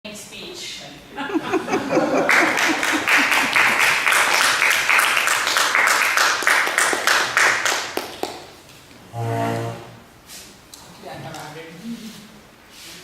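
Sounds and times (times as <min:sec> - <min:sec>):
audience applauding: 0:01.4 - 0:08.5.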